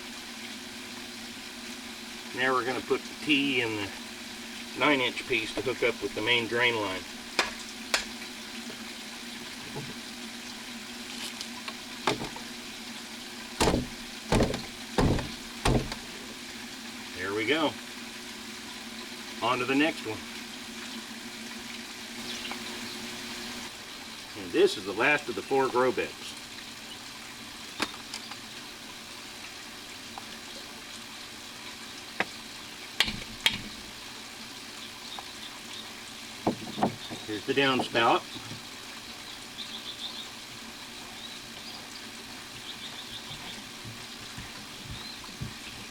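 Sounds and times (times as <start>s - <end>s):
water trickling: 0.0s - 45.9s
plastic pipe fittings knocking: 12.0s - 12.5s, 13.6s - 16.1s.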